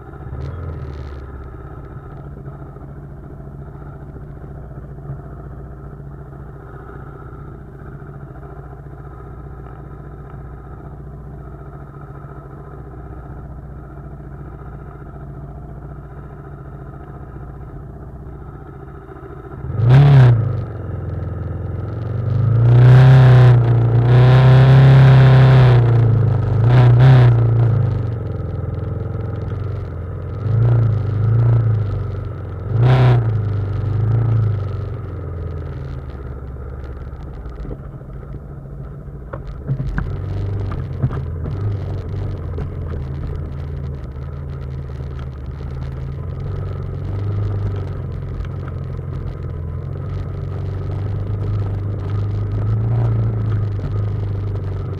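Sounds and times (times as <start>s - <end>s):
motorcycle engine revving: 18.3s - 54.9s.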